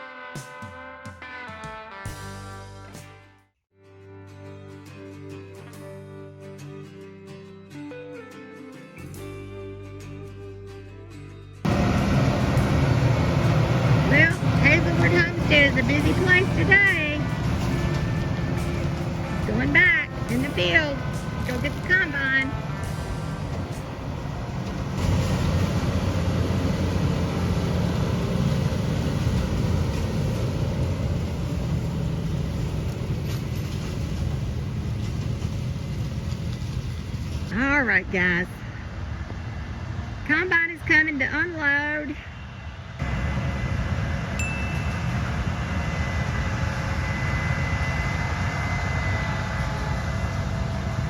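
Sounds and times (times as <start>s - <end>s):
truck engine rumbling: 11.6s - 51.0s
high ringing tone: 44.3s - 46.2s
brief higher tone: 44.4s - 45.6s.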